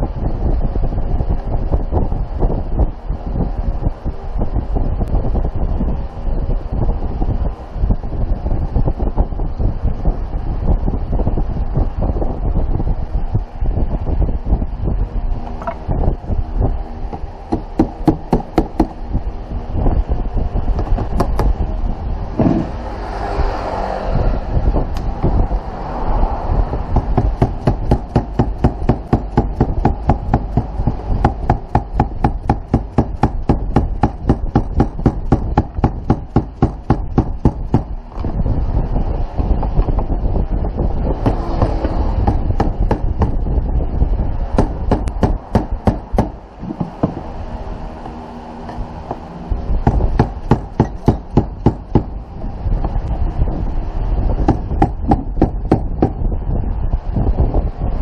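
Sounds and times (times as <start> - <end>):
wind noise on microphone: 0.0 - 58.0
rapid mechanical clicking: 26.9 - 38.3, 44.5 - 47.3, 49.8 - 52.2.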